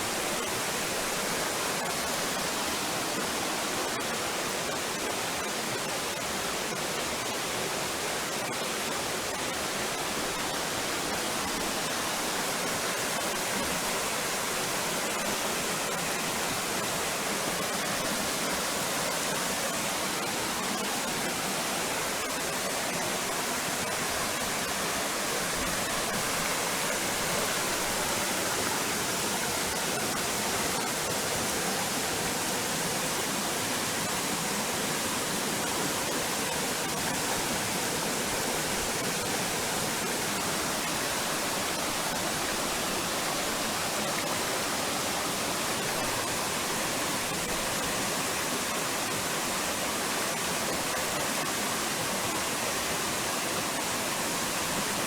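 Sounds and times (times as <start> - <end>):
river water rushing: 0.0 - 55.0.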